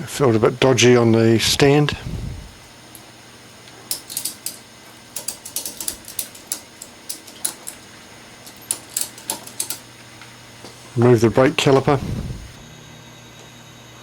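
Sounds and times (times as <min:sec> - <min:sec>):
hand ratchet clicking: 0:03.9 - 0:09.9.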